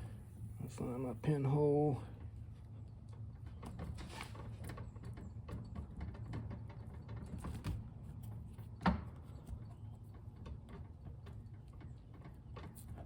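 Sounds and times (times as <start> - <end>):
reamer scraping and clicking in tire: 2.8 - 13.0.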